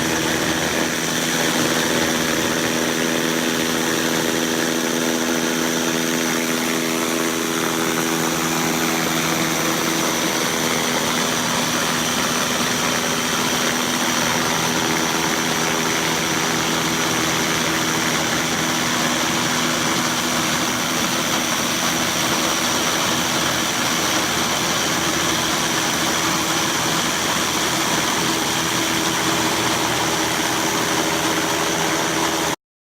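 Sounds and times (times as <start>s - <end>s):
concrete scarifier grinding floor: 0.0s - 32.6s
machine hum: 0.0s - 32.6s.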